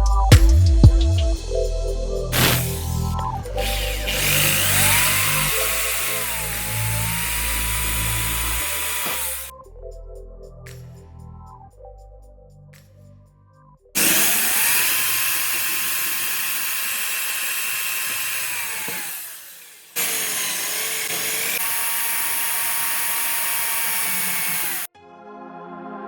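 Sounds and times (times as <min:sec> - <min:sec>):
small power tool motor running: 0:02.4 - 0:09.5, 0:14.0 - 0:24.9.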